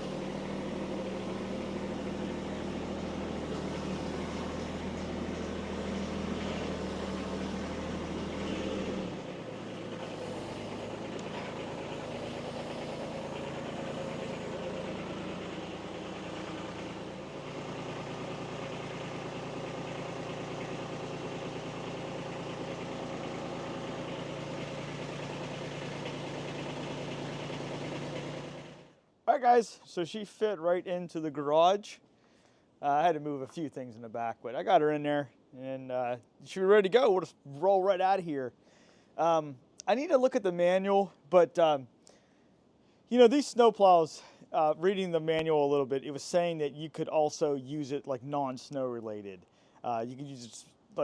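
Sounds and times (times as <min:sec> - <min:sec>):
tractor diesel engine running: 0:00.0 - 0:29.0.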